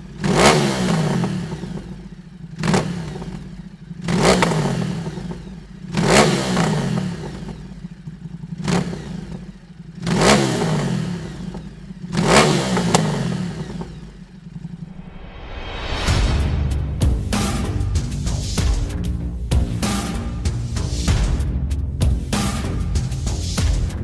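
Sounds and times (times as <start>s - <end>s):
motorcycle engine revving: 0.0s - 15.2s, 22.0s - 24.0s.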